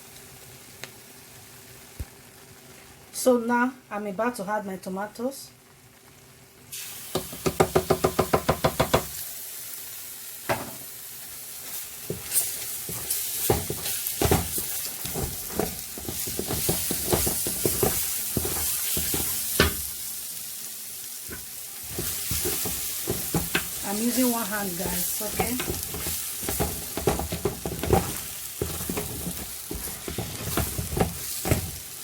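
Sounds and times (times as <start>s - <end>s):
tomatoes sizzling in a pot: 0.0s - 32.0s
spoon scraping a pot: 24.8s - 31.8s.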